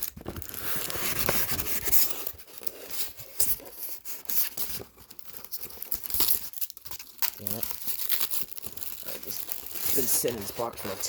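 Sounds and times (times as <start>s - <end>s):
cardboard scraping: 0.0s - 6.2s, 7.6s - 11.0s.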